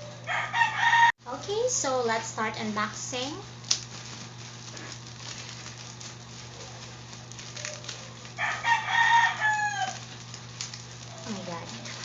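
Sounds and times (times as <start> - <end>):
rooster crowing: 0.0 - 1.2, 7.5 - 10.3.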